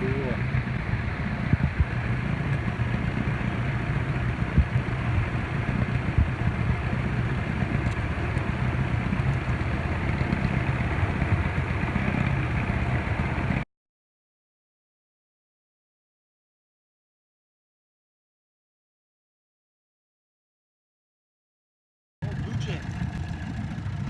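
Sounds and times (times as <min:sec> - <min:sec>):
outboard motor running: 0:00.0 - 0:13.6, 0:22.2 - 0:24.0
water noise: 0:00.0 - 0:13.6, 0:22.2 - 0:24.0.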